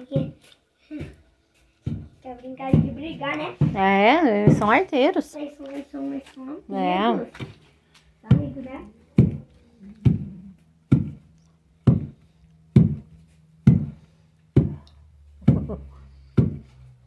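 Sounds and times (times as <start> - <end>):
pestle pounding in wooden mortar: 1.8 - 4.9, 9.2 - 10.3, 10.9 - 16.8.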